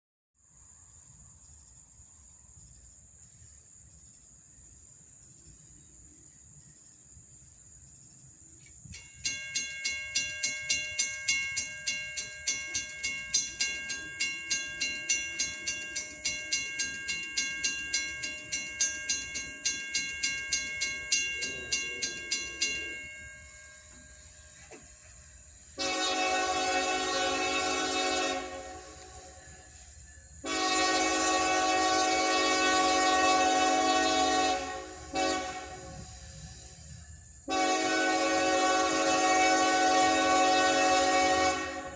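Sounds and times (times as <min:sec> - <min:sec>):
railroad bell ringing: 0:08.8 - 0:36.1, 0:37.5 - 0:41.9
locomotive air horn blast: 0:25.8 - 0:29.4, 0:30.4 - 0:36.2, 0:37.5 - 0:41.9.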